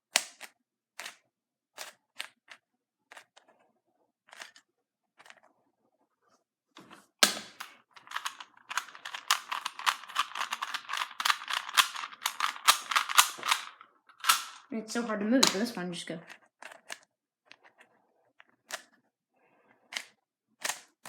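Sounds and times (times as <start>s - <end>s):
puzzle cube clicking: 0.1s - 1.2s, 1.8s - 3.4s, 7.2s - 14.7s, 15.4s - 17.0s, 18.6s - 19.0s, 19.8s - 21.0s
cube loud snap: 7.2s - 7.7s.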